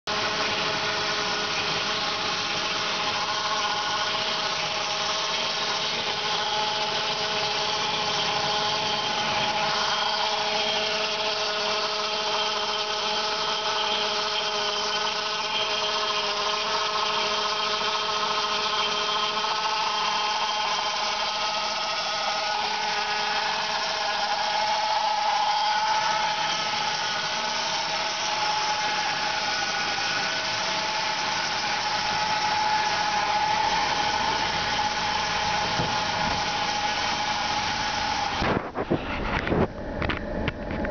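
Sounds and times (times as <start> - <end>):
car engine running: 0.1 - 40.9
engine whine: 0.1 - 40.9.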